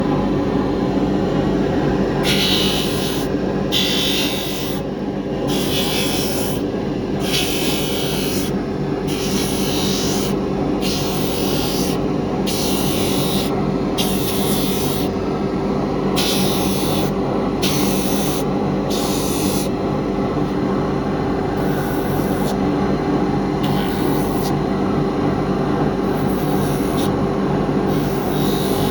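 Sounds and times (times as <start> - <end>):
grinder humming: 2.2 - 4.8, 5.5 - 15.2, 27.8 - 28.9
shoe sole rasping on grinder: 2.2 - 4.8, 5.5 - 6.6, 7.2 - 15.1, 16.2 - 19.7, 23.6 - 24.6, 26.1 - 27.2, 27.9 - 28.9.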